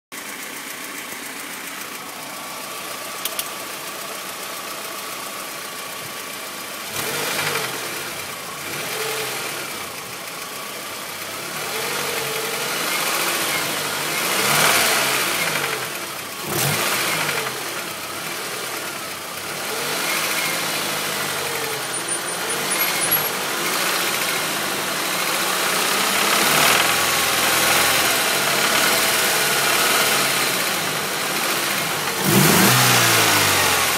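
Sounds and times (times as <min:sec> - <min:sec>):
engine knocking: 0:00.2 - 0:13.3
car engine idling and revving: 0:00.2 - 0:33.9.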